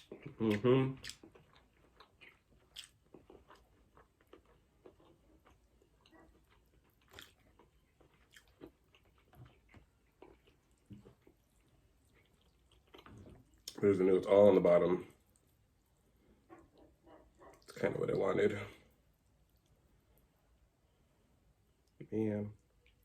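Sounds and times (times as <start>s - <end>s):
faint chewing: 0.0s - 20.4s, 21.8s - 23.0s.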